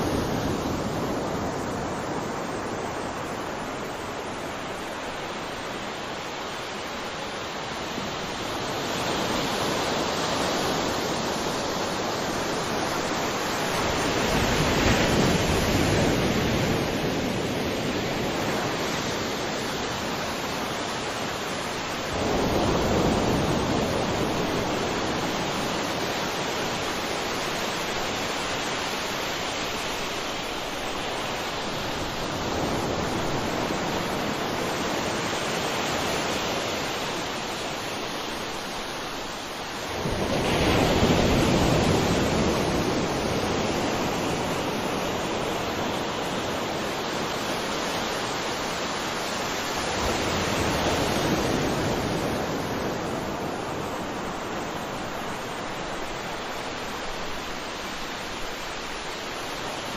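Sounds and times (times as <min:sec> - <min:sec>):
sea waves breaking: 0:00.0 - 0:59.9.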